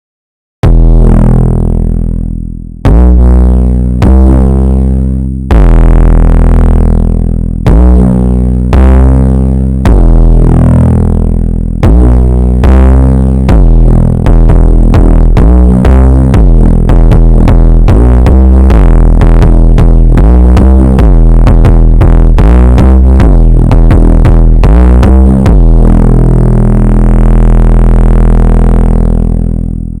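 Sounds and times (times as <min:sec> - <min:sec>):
deep booming bass note: 0:00.6 - 0:30.0.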